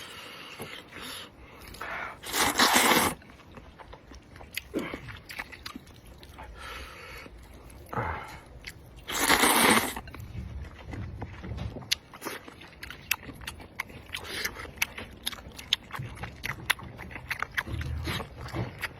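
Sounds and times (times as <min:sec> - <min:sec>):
chewing and mouth sounds: 0:00.0 - 0:18.9
noodles slurped loudly: 0:02.2 - 0:03.2, 0:09.1 - 0:10.0.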